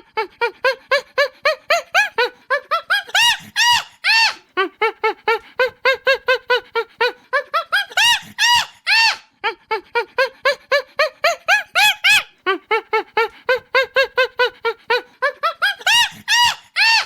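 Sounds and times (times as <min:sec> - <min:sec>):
chimpanzee hooting and screaming: 0:02.8 - 0:04.4, 0:07.8 - 0:09.2, 0:15.5 - 0:17.0.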